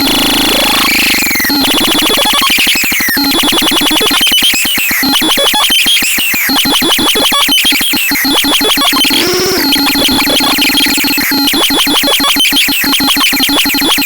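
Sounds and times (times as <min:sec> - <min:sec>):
synthesizer pulsing tone: 0:08.3 - 0:13.3
high electronic whine: 0:08.4 - 0:12.5.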